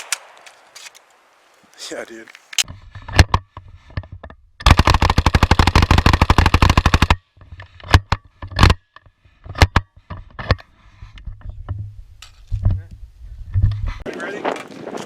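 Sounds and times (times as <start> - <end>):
single gunshots: 0.0 - 1.2.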